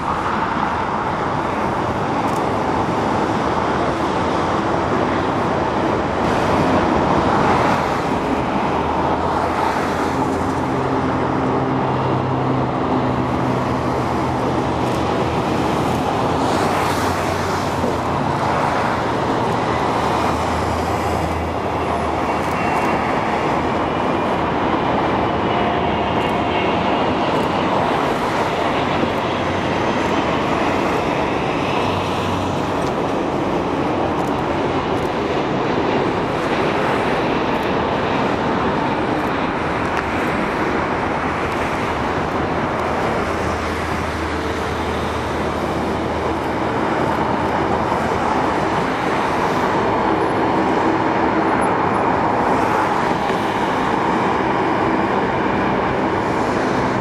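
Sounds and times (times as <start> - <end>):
road traffic: 0.0 - 57.0
vehicles passing: 0.0 - 57.0.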